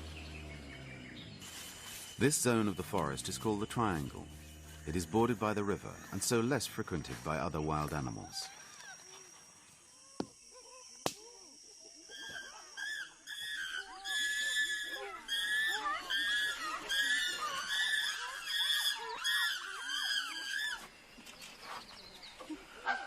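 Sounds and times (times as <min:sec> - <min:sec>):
chimpanzees screaming and hooting: 0:08.2 - 0:21.0.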